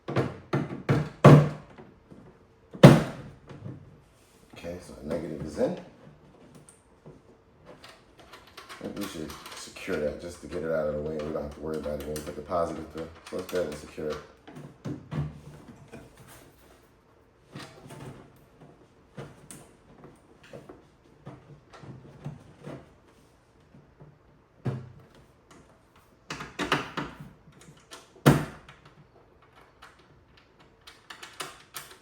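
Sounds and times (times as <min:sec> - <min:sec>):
clicks taps and rustles of handwork: 0:04.5 - 0:16.9.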